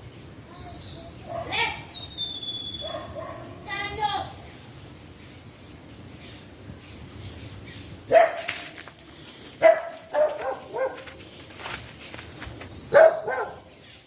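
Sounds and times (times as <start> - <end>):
dog barking: 1.2 - 1.7, 2.8 - 3.6, 8.1 - 8.6, 9.6 - 11.2, 12.9 - 13.7.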